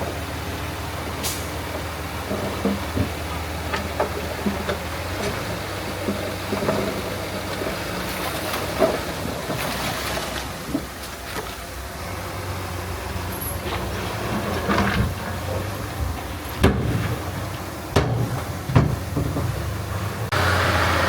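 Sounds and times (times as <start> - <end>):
heavy machinery diesel engine: 0.0 - 21.0
metallic clanks and knocks: 1.3 - 7.8, 13.4 - 20.3.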